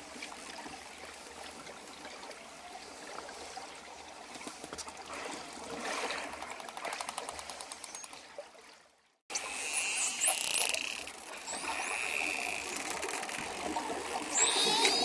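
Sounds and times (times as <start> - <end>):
dolphins whistling underwater: 14.2 - 15.0.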